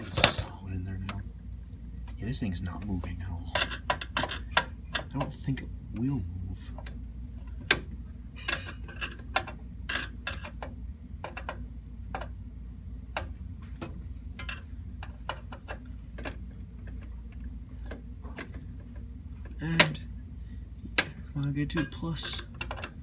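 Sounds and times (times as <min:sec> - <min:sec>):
steady low hum: 0:00.0 - 0:23.0
small hard parts clicking: 0:20.9 - 0:23.0.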